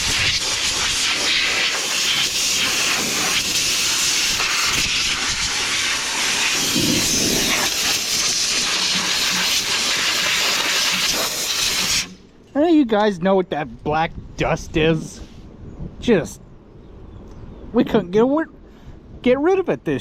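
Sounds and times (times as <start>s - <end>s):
compressed air nozzle hissing: 0.0s - 12.2s.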